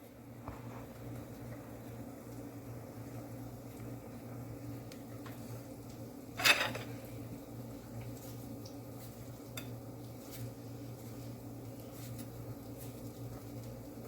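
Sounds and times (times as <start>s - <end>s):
kitchenware clattering and ringing: 6.4s - 7.0s.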